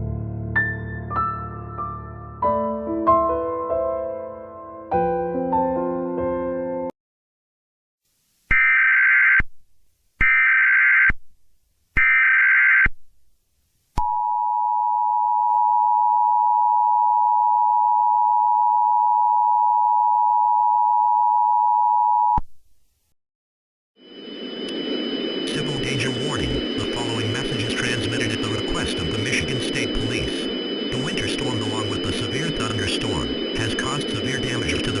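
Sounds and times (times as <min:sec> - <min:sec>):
digital data bursts: 0:25.4 - 0:35.0
two-tone attention signal: 0:25.4 - 0:35.0.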